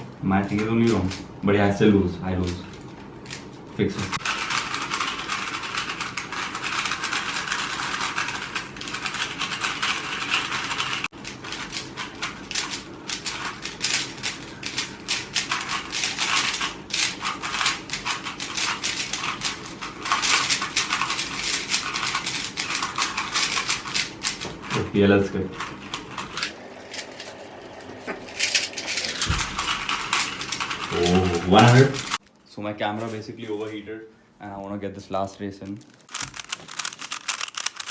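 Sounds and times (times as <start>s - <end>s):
plastic cubes clicking: 35.7s - 37.9s.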